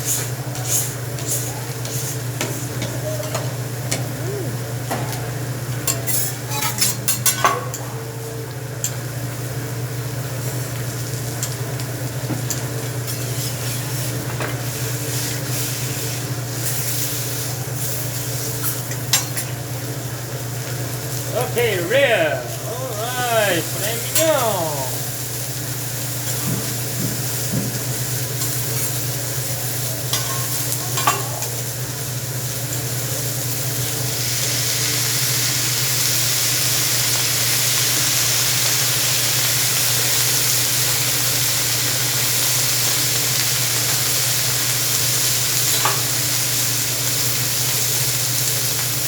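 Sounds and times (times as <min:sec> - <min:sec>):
steak sizzling on a griddle: 0:10.4 - 0:21.3, 0:25.2 - 0:49.0.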